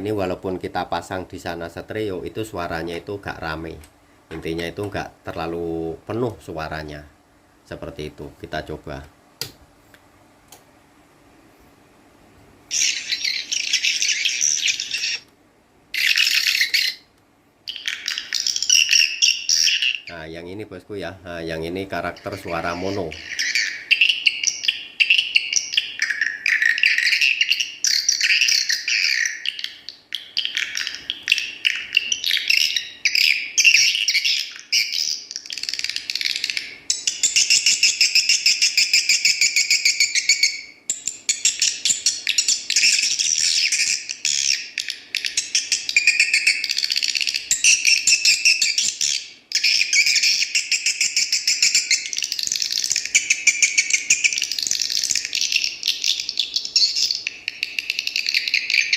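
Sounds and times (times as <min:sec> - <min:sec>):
swiftlet calls playing back: 0:12.7 - 0:15.2, 0:22.0 - 0:58.9.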